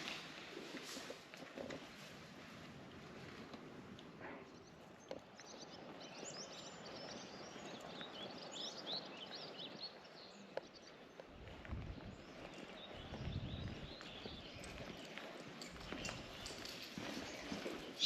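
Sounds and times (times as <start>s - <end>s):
small birds chirping: 4.4s - 18.0s.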